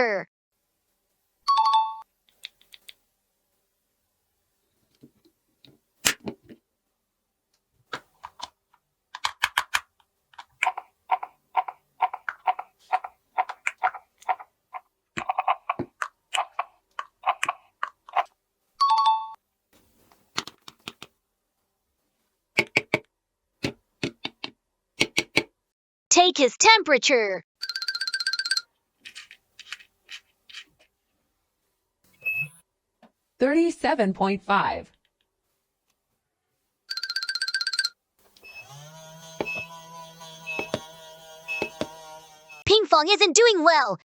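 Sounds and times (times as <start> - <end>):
plastic toy pieces clicking: 8.2 - 14.4.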